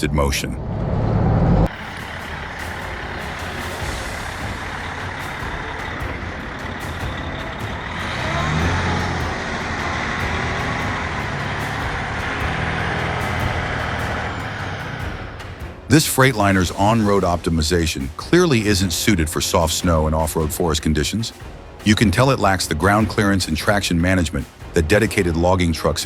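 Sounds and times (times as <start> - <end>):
truck diesel engine under load: 0.6 - 15.9.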